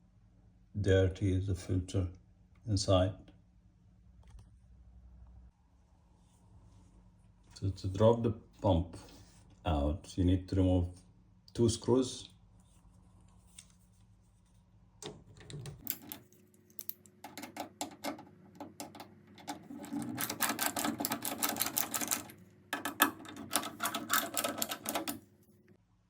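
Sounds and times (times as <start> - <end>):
rattling clicks: 15.0 - 25.2.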